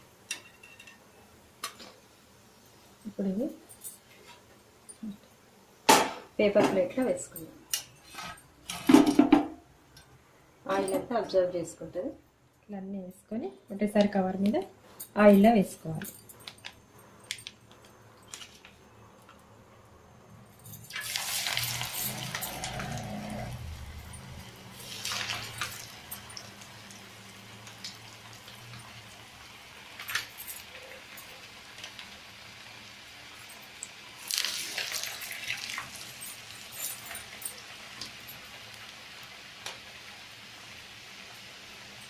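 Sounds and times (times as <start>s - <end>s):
hot oil sizzling: 20.9s - 42.0s.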